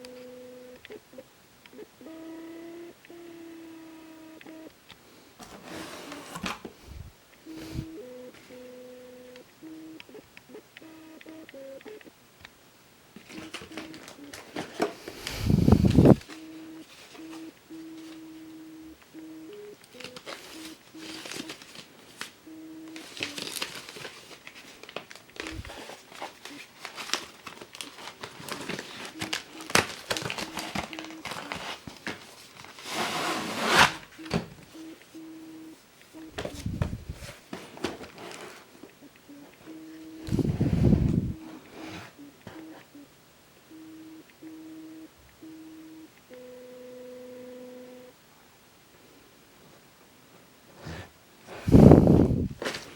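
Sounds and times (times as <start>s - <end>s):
plastic and paper crinkling: 13.2s - 18.2s, 19.8s - 34.9s, 36.4s - 38.9s, 52.3s - 52.9s.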